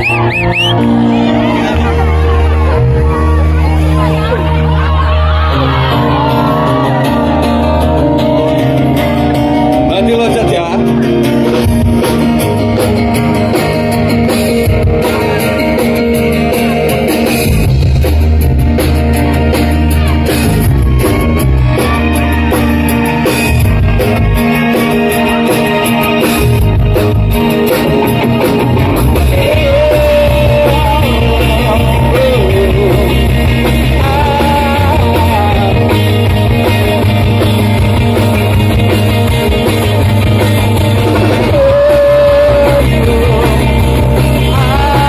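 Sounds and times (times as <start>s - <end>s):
bass guitar: 0.0s - 45.0s
drum kit: 0.0s - 45.0s
electric guitar: 0.0s - 45.0s
man singing: 29.0s - 36.7s, 41.1s - 45.0s.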